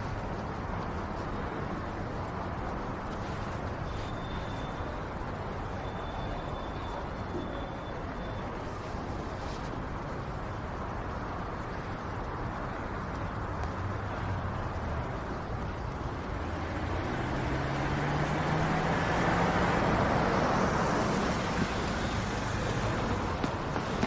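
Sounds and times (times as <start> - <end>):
steady traffic hum: 0.0 - 24.0
vehicle passing close by: 15.9 - 24.0.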